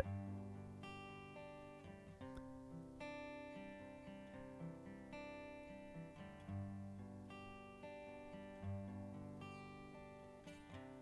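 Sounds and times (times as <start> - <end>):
acoustic guitar strumming chords: 0.0 - 1.3.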